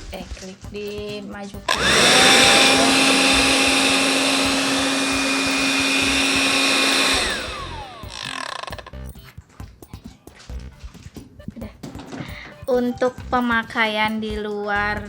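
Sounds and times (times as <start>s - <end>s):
handheld vacuum cleaner whining: 1.7s - 8.9s.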